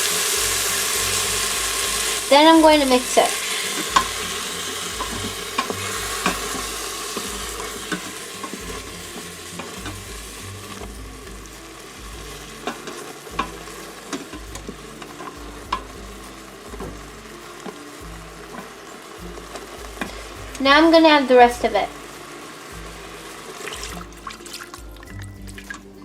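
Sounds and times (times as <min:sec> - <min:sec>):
utensil scraping a metal pot: 0:00.0 - 0:17.9
food sizzling: 0:00.0 - 0:26.0.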